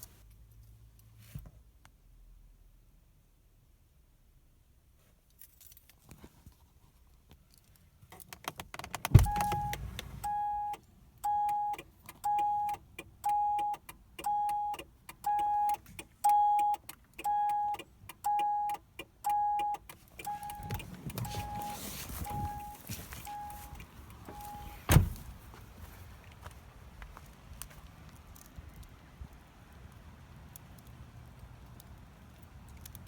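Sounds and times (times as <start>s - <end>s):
car warning chime beeping: 9.2s - 25.2s
heavy thump: 24.2s - 25.5s.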